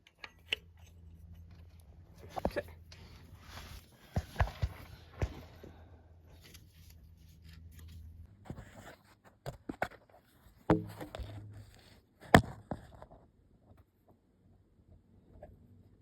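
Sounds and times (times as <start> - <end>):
tools and parts clicking: 0.0 - 1.7.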